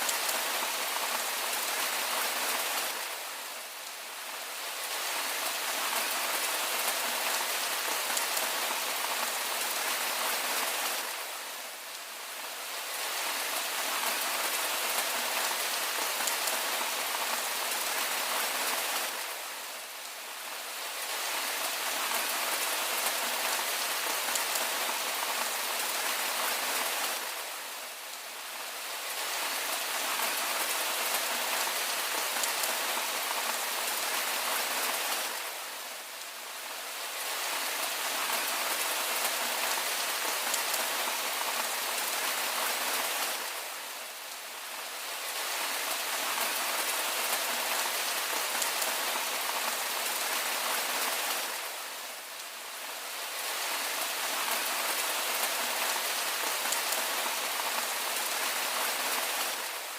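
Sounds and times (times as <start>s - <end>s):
steady rain: 0.0s - 59.9s.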